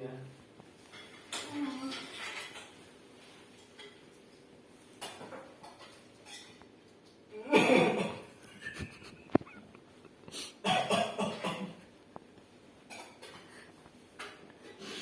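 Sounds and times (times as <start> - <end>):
man coughing: 7.4 - 8.3, 10.3 - 11.8.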